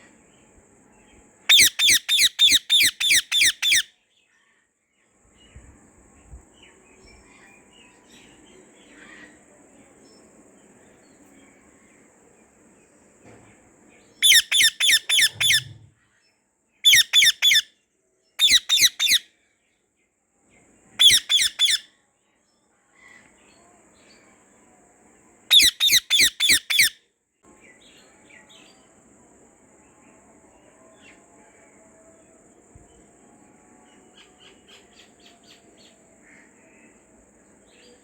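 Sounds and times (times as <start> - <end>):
parakeet screeching: 1.5 - 3.9, 14.2 - 15.8, 16.9 - 17.6, 18.4 - 19.2, 21.0 - 21.8, 25.5 - 26.9.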